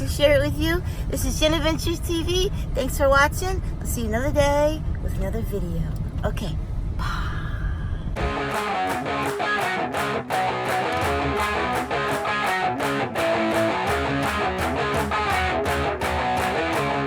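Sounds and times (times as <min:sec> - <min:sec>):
guitar over a steady beat: 0:08.2 - 0:17.0.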